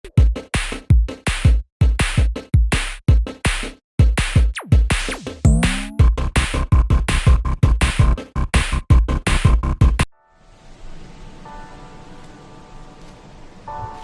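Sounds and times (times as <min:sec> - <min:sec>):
drum-machine kicks and bass hits: 0:00.0 - 0:10.1
electronic music: 0:04.6 - 0:08.7.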